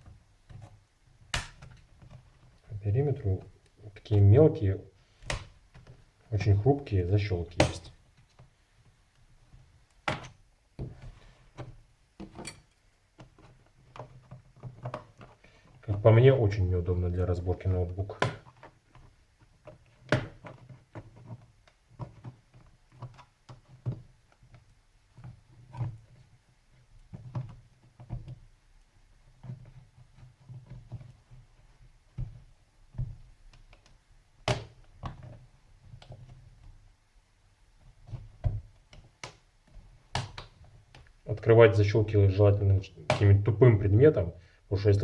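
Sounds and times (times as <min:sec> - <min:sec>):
plastic case clicks and knocks: 0:01.4 - 0:01.9, 0:07.5 - 0:08.0, 0:18.1 - 0:19.1, 0:43.0 - 0:43.5.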